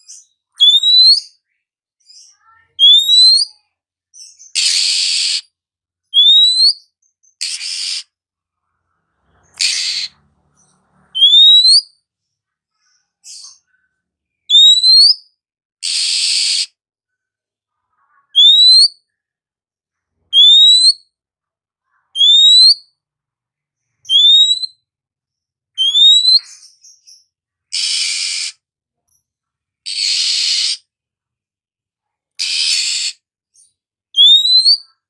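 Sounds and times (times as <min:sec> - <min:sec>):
bird harsh rasps: 0:00.6 - 0:01.3, 0:02.2 - 0:03.5, 0:04.4 - 0:05.5, 0:06.2 - 0:06.8, 0:07.4 - 0:08.2, 0:09.3 - 0:10.3, 0:11.0 - 0:11.9, 0:14.5 - 0:15.2, 0:15.8 - 0:16.8, 0:18.3 - 0:18.9, 0:20.4 - 0:21.0, 0:22.2 - 0:22.8, 0:24.1 - 0:24.7, 0:25.8 - 0:27.0, 0:27.7 - 0:28.6, 0:29.8 - 0:30.9, 0:32.4 - 0:33.3, 0:34.2 - 0:35.0
bird rising whistles: 0:06.2 - 0:06.8, 0:11.2 - 0:11.8, 0:24.1 - 0:24.7, 0:34.2 - 0:34.8.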